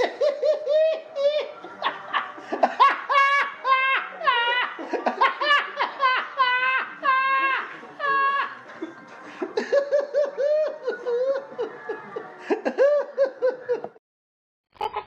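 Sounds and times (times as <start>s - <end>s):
high-pitched laughter: 14.8s - 15.0s.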